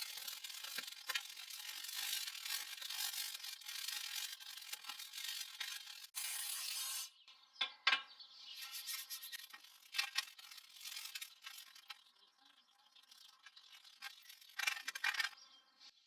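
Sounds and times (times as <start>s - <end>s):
brush scrubbing: 0.0s - 6.2s, 8.6s - 15.2s.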